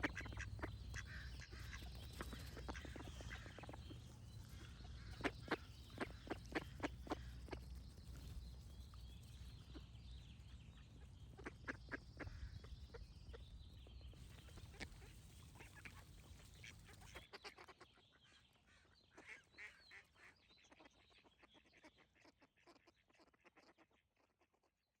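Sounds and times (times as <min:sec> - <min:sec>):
ducks quacking: 0:00.0 - 0:07.6, 0:14.3 - 0:17.6
low background hum: 0:00.0 - 0:17.2
birds singing faintly: 0:00.0 - 0:22.2.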